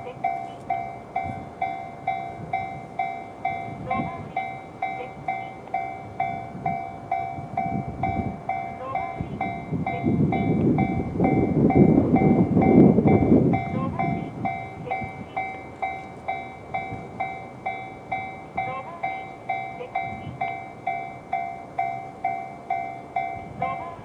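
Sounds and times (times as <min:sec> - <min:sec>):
electric train rumble: 0:00.0 - 0:24.0
level crossing warning bell: 0:00.0 - 0:24.0.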